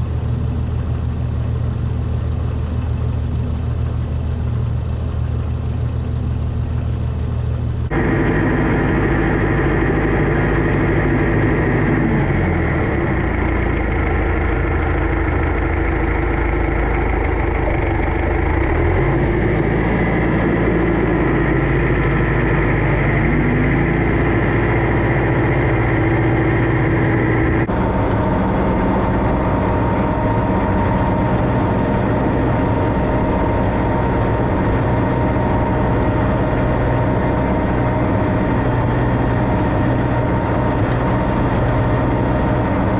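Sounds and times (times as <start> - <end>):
tractor engine running: 0.0 - 42.9.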